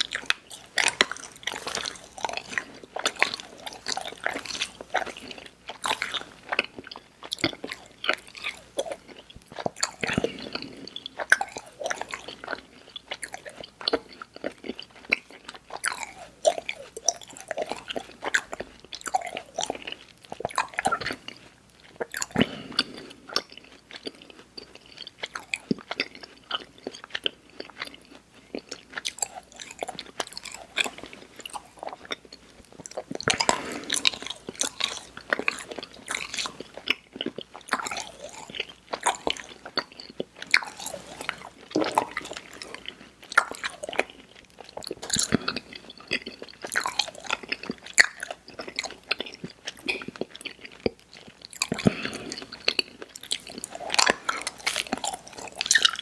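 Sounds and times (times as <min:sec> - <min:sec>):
person chewing candy: 0:00.0 - 0:56.0.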